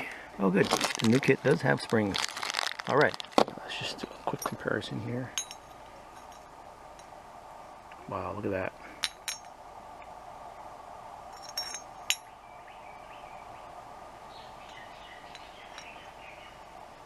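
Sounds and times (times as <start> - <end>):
steady background hum: 0.0 - 17.0
metal parts clinking: 5.4 - 6.5, 11.4 - 12.3.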